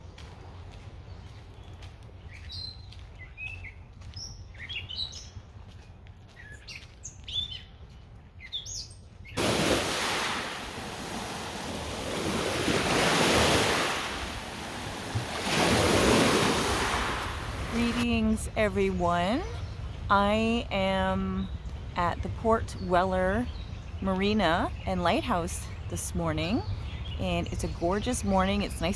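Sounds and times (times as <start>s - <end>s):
small birds chirping: 0.8s - 9.4s, 12.7s - 28.9s
waves washing on shore: 9.4s - 18.6s.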